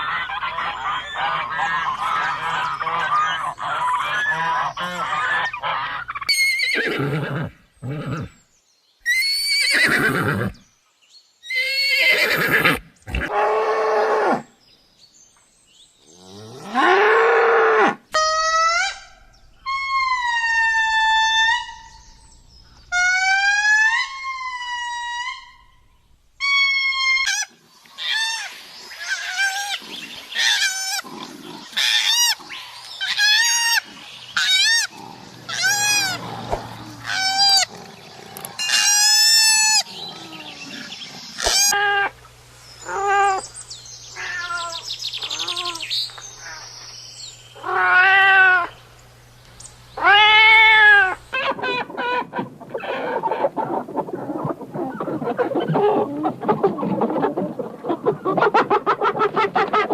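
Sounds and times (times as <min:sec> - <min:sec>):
cats meowing: 0:44.2 - 0:45.8, 0:47.6 - 0:48.7, 0:50.0 - 0:51.2.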